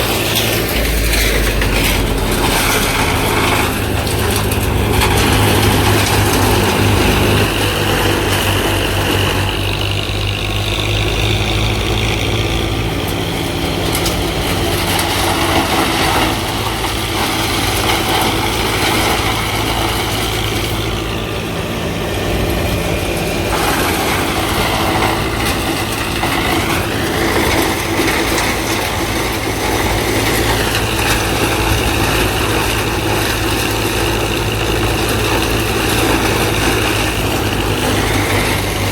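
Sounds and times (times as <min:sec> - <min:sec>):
high whine: 0:00.0 - 0:08.4
diesel engine running: 0:00.0 - 0:38.9.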